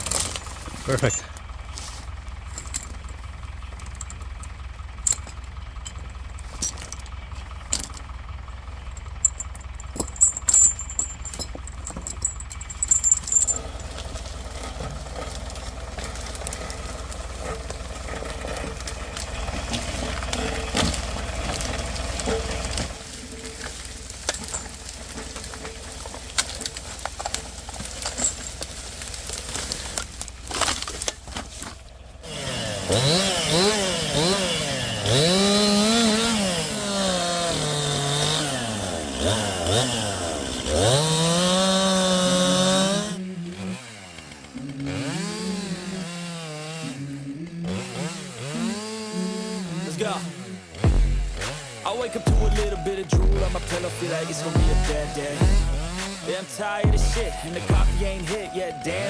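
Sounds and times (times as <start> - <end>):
metallic clanks and rattles: 0.0 - 32.2
engine whine: 0.0 - 59.0
tractor engine running: 0.0 - 59.0.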